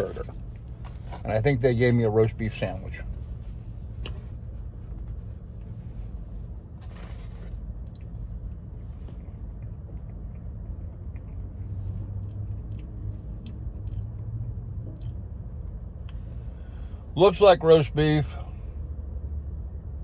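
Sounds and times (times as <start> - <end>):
steady low hum: 0.0 - 20.0
chewing sounds: 6.9 - 15.3.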